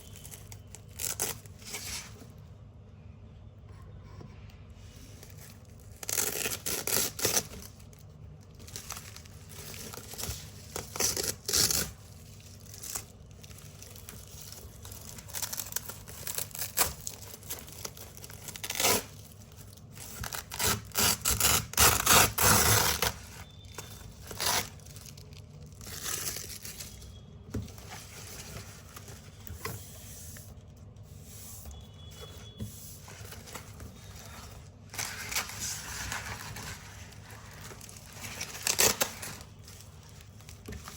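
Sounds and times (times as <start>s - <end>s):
velcro strips ripping: 17.8s - 19.3s, 20.2s - 23.2s.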